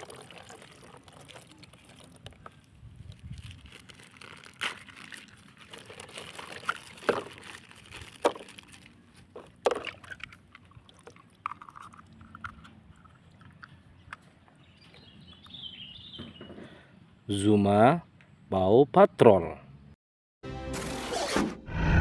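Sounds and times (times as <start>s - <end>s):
plastic bag crinkling and tearing: 3.0s - 10.2s.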